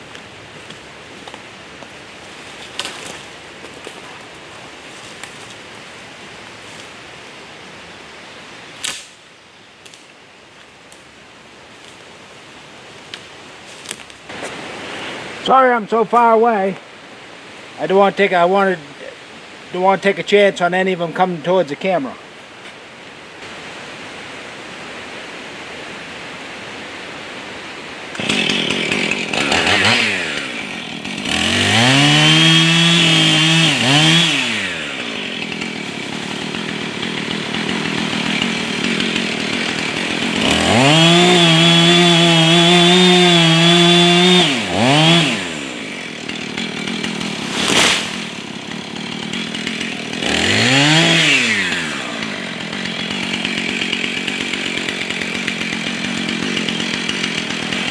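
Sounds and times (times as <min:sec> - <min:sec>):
sharp crack: 0:08.8 - 0:10.2, 0:46.3 - 0:52.1
chainsaw revving and cutting: 0:28.1 - 0:57.9.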